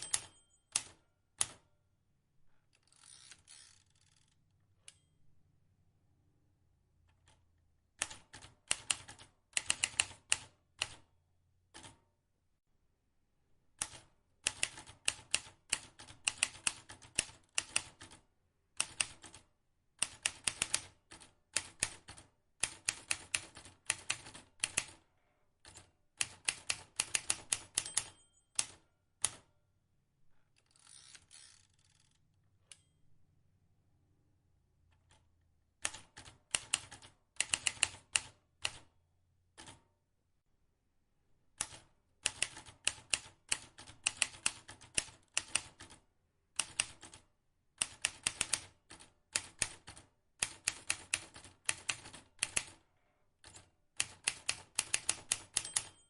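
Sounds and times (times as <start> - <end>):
manual typewriter typing: 0.0 - 1.6, 13.8 - 18.2, 18.8 - 25.0, 25.6 - 29.5, 35.8 - 38.9, 41.6 - 46.0, 46.6 - 52.8, 53.4 - 56.0.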